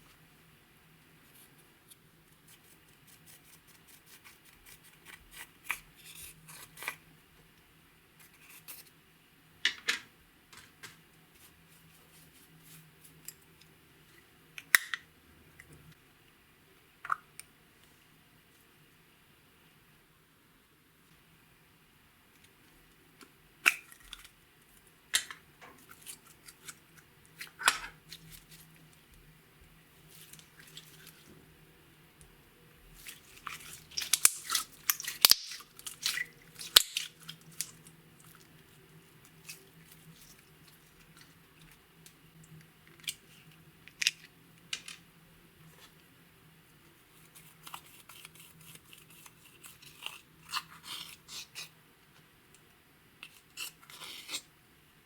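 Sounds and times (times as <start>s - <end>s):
slime crackling and popping: 33.0s - 37.8s.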